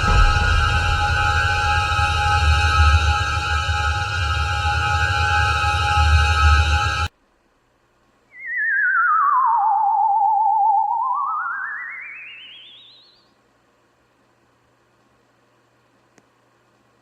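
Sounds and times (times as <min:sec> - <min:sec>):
theremin-like electronic tone: 0:08.4 - 0:13.2.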